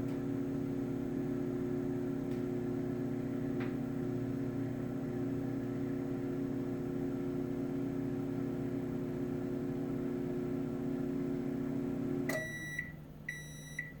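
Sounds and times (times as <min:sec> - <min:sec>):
microwave oven humming: 0:00.0 - 0:14.0
microwave beeps: 0:12.0 - 0:14.0.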